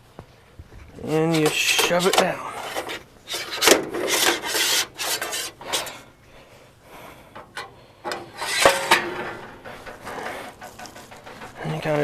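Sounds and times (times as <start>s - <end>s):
rubbing and scraping: 1.1s - 6.0s, 8.1s - 12.0s.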